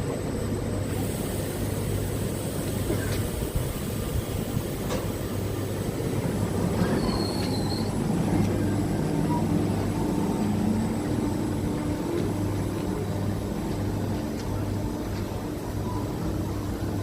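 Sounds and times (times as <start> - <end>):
electric train motors humming: 0.0 - 17.0
brief high squeal: 6.8 - 8.0.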